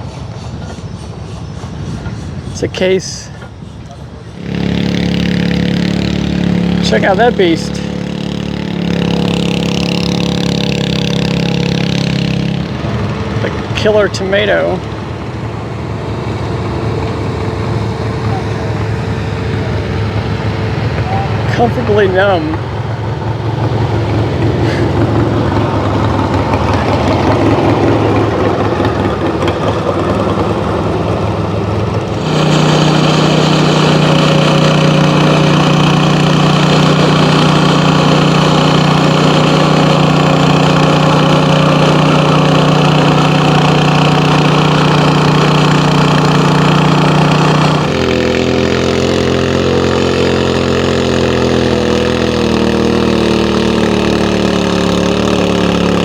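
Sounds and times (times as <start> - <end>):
tractor engines idling: 0.0 - 56.0.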